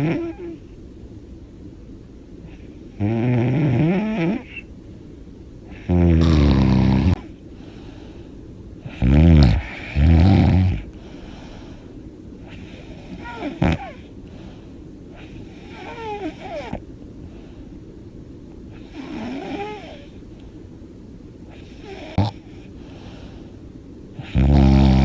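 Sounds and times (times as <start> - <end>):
woman snoring loudly: 0.0 - 0.5, 3.0 - 4.5, 5.8 - 7.2, 9.0 - 10.8, 18.9 - 20.0, 24.2 - 25.0.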